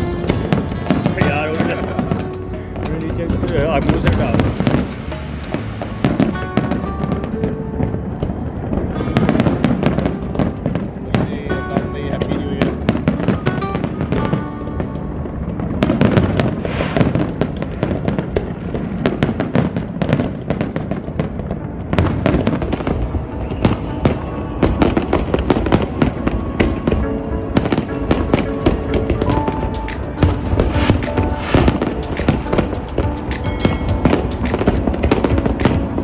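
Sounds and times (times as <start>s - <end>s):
music with held notes: 0.0s - 17.2s, 20.2s - 36.0s
fireworks bangs and crackles: 0.1s - 7.2s, 7.8s - 36.0s.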